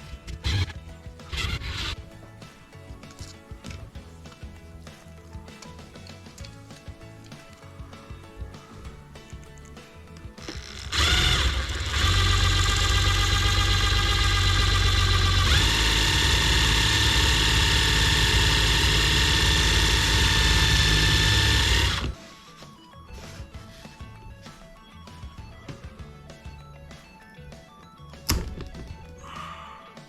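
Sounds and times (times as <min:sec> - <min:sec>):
small electric motor whining: 0:00.3 - 0:02.0, 0:10.4 - 0:22.2.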